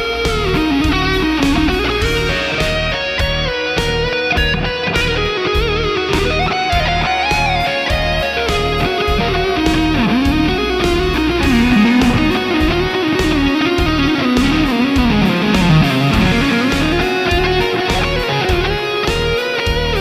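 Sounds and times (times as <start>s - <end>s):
electric guitar lead melody: 0.0s - 20.0s
low rhythmic accompaniment: 0.0s - 20.0s.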